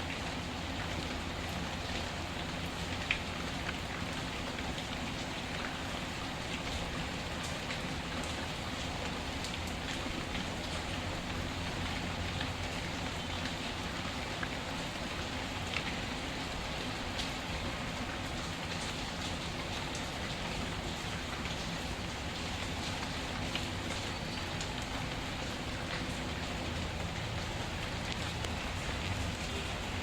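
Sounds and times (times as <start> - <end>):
steady rain: 0.0 - 30.0.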